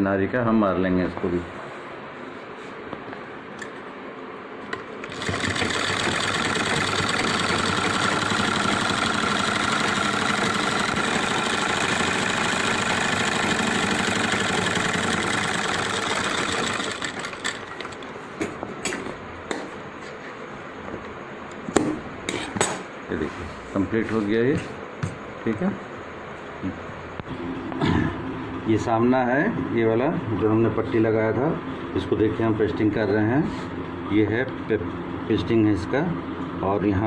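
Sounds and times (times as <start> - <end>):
sewing machine stitching: 5.0 - 18.0.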